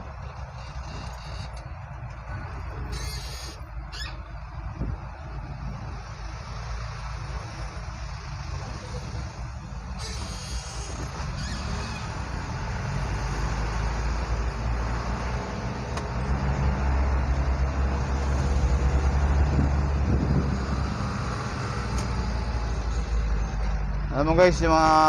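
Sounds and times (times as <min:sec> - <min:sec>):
diesel truck engine drone: 0:00.0 - 0:25.0
road noise: 0:00.0 - 0:25.0.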